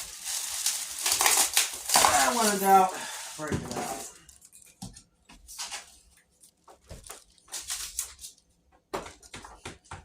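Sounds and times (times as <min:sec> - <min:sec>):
cardboard rustling and scraping: 0:00.0 - 0:04.2.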